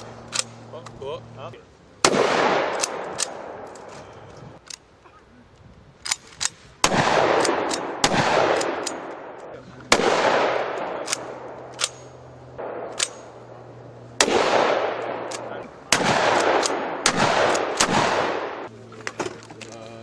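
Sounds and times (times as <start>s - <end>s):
shotgun blasts with echo: 2.0s - 3.7s, 6.8s - 12.0s, 14.2s - 18.7s.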